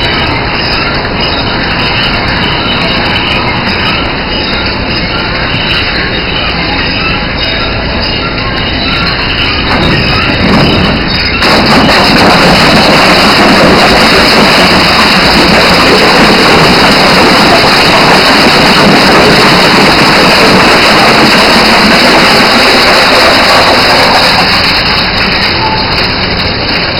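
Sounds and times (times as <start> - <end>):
crusher grinding plastic: 9.7 - 25.6.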